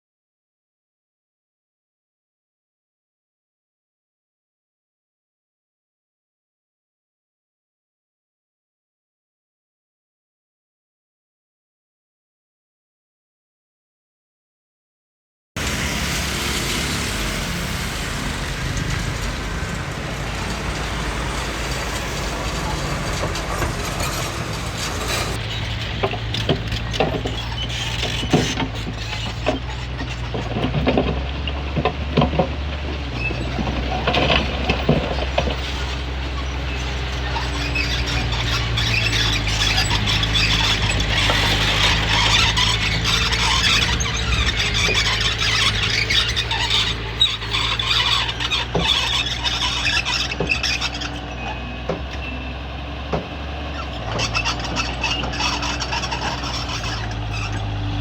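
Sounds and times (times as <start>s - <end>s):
high track squeal: 15.6s - 30.2s, 33.1s - 52.6s, 53.7s - 58.0s
bulldozer diesel engine running: 15.6s - 58.0s
metal clanks and knocks: 18.0s - 27.3s.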